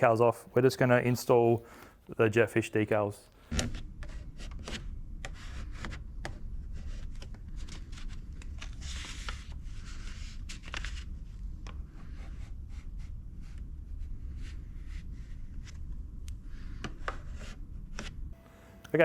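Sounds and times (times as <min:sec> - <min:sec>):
rubbing and scraping: 0:03.5 - 0:18.4.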